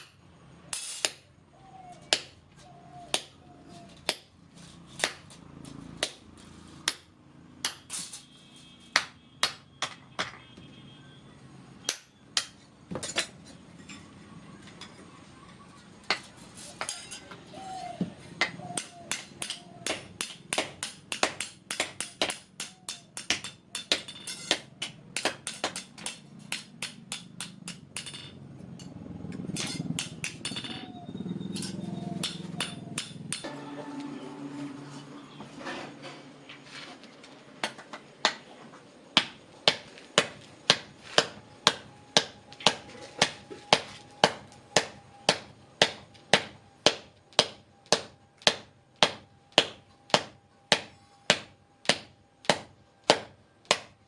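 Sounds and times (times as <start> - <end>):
hammer striking metal on anvil: 18.8 - 29.0, 29.6 - 30.9, 31.6 - 34.0.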